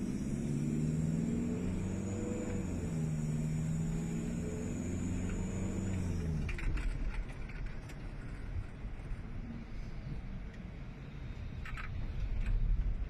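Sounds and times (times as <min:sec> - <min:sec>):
diesel engine running: 0:00.0 - 0:09.1
road noise: 0:00.0 - 0:13.0.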